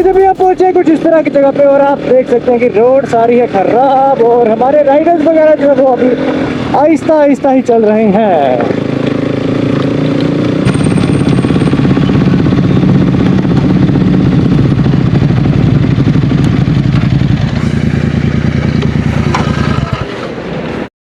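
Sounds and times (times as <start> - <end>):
motorcycle engine at low speed: 7.8 - 20.8.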